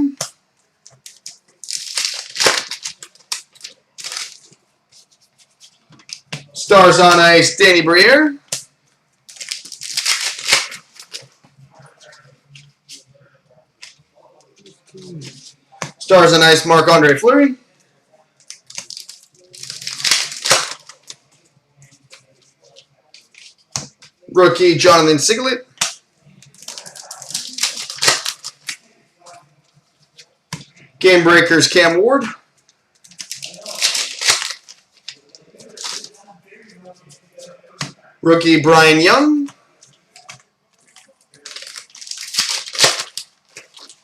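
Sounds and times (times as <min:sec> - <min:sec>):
cards rustling and clicking: 0:00.2 - 0:07.5, 0:09.3 - 0:13.1, 0:18.4 - 0:24.2, 0:25.7 - 0:28.9, 0:32.6 - 0:36.2
wrapper crinkling and tearing: 0:00.9 - 0:04.6, 0:09.3 - 0:11.3, 0:18.4 - 0:21.3, 0:25.7 - 0:28.9, 0:33.0 - 0:36.2, 0:40.1 - 0:44.0.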